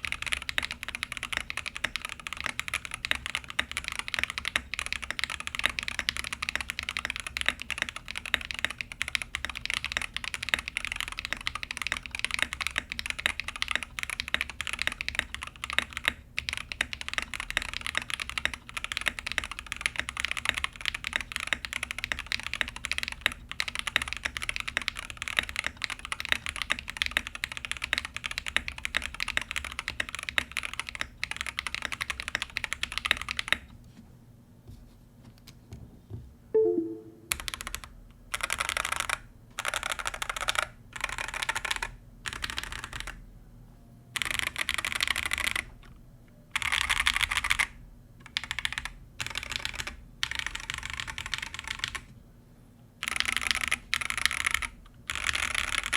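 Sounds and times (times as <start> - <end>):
mechanical keyboard typing: 0.0 - 33.6, 36.6 - 43.2, 44.2 - 52.1, 53.0 - 55.9.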